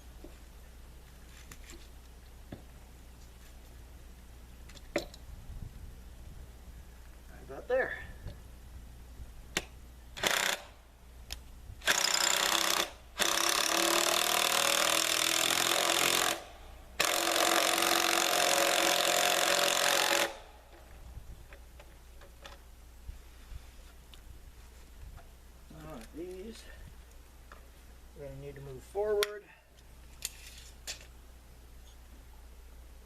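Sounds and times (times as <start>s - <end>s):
cordless power drill running: 10.2s - 10.7s, 11.8s - 20.4s.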